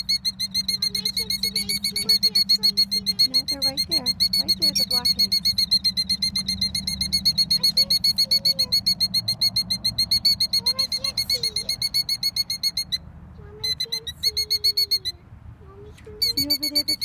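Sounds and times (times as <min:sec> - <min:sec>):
bird alarm calls: 0:00.0 - 0:15.2, 0:16.2 - 0:17.0.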